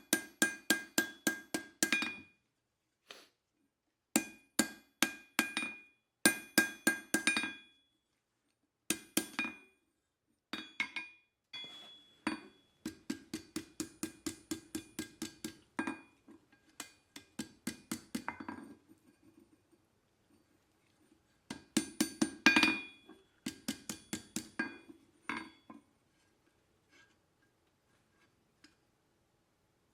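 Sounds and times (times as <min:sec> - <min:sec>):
hammer striking steel on anvil: 0:00.0 - 0:02.2, 0:04.2 - 0:07.7, 0:08.9 - 0:09.7, 0:10.6 - 0:16.0, 0:21.5 - 0:25.6.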